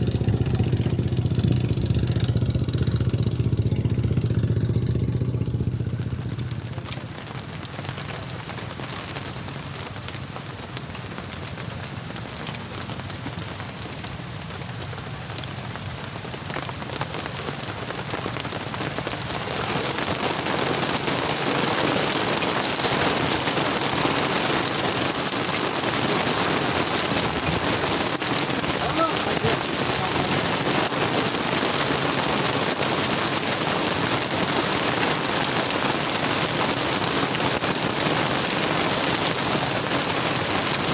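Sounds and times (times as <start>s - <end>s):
motor low hum: 0.0s - 7.0s
rain falling: 0.0s - 40.9s.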